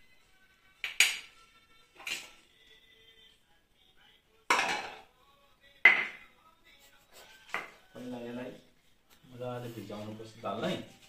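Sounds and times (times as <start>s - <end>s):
metal dishes and utensils clinking: 4.5s - 5.1s.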